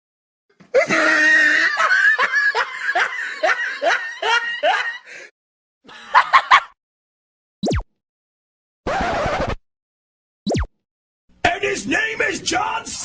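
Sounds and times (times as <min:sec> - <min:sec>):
person laughing loudly: 0:00.7 - 0:05.3, 0:05.9 - 0:06.8.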